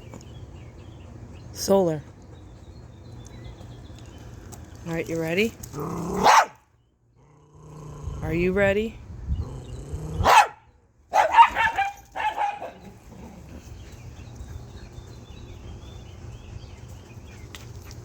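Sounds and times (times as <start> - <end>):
dog barking and yipping: 6.2 - 6.6, 10.2 - 13.0.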